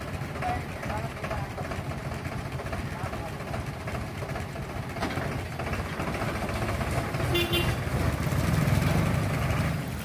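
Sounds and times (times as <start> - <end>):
heavy vehicle engine running: 0.0 - 10.0
horn toot: 7.3 - 7.8.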